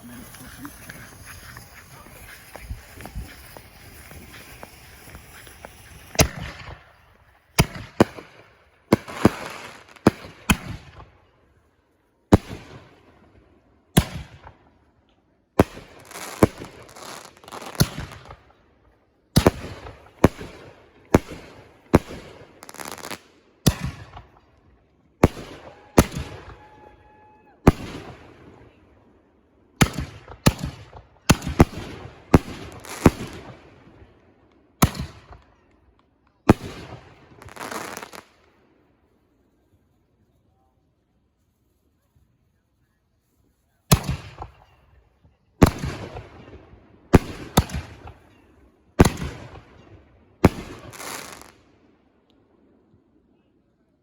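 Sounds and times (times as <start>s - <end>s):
fireworks crackling: 0.0s - 10.8s, 15.6s - 18.5s, 19.4s - 24.2s, 29.8s - 34.0s, 36.5s - 39.8s, 50.4s - 51.6s
fireworks bangs: 0.0s - 11.1s, 29.8s - 34.0s, 36.5s - 38.6s, 45.6s - 48.4s, 50.4s - 51.6s.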